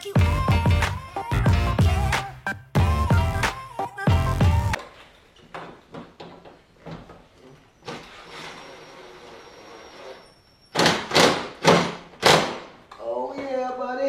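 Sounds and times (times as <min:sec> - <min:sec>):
background music: 0:00.0 - 0:04.8.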